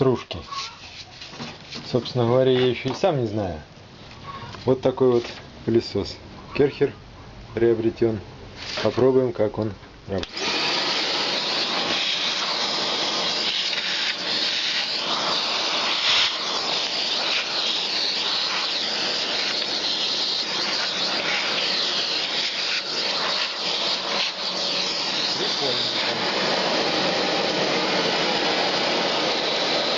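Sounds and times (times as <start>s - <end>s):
vacuum cleaner running: 10.2s - 29.9s.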